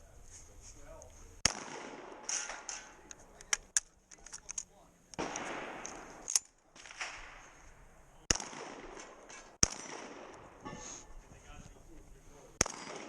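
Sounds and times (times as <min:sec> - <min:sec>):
shotgun shots echoing: 0:01.4 - 0:03.1, 0:05.2 - 0:07.5, 0:08.2 - 0:10.8, 0:12.6 - 0:13.0.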